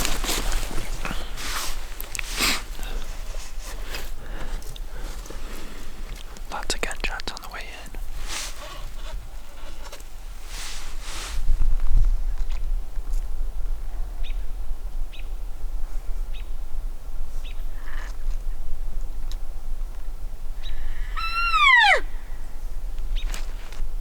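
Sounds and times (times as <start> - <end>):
elk bugling: 0.0 - 6.4, 20.7 - 22.2.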